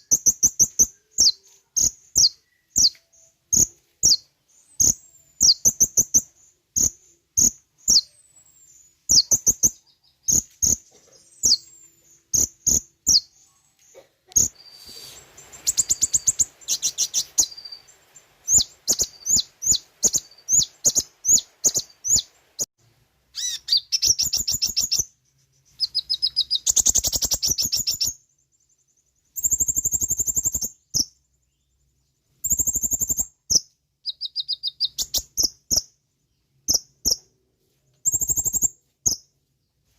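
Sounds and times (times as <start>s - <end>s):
bird chirping high: 0.0s - 22.7s, 23.3s - 28.4s, 29.2s - 31.7s, 32.4s - 36.0s, 36.7s - 37.3s, 38.0s - 39.3s
buzzy bird trills: 0.0s - 22.7s, 23.3s - 28.2s, 29.3s - 31.1s, 38.0s - 39.2s.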